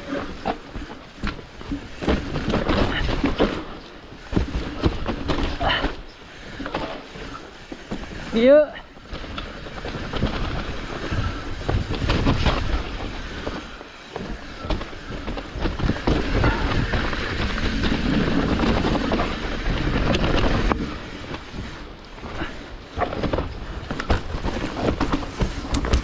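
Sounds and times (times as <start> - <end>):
bike chain and frame rattling: 0.0 - 26.0
bike tyres rumbling over rocks: 0.0 - 26.0
wind on microphone: 9.7 - 26.0.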